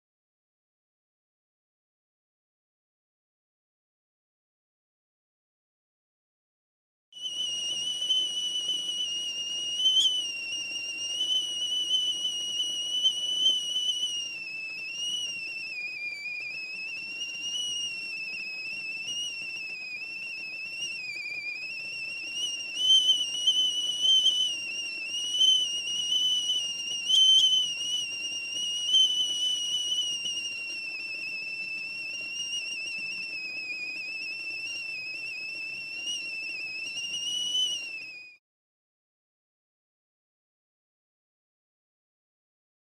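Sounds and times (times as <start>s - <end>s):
kettle whistling: 7.2s - 38.4s.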